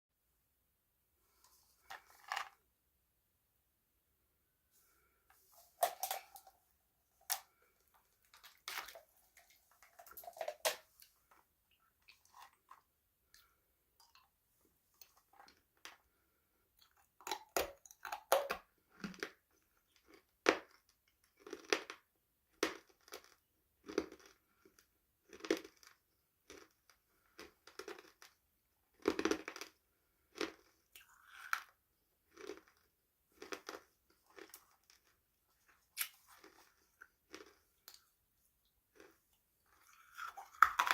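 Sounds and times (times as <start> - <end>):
chewing crunchy food: 7.2 - 14.4, 16.8 - 40.9.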